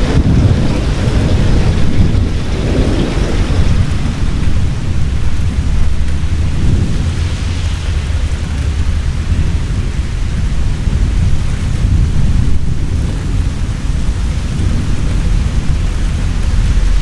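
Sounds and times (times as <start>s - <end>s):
heavy rain falling: 0.0s - 17.0s
low rolling thunder: 0.0s - 17.0s.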